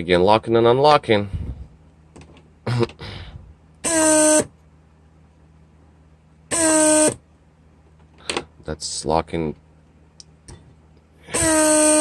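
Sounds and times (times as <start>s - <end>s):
pump motor buzzing whine: 3.8s - 4.6s, 6.5s - 7.2s, 11.2s - 12.0s.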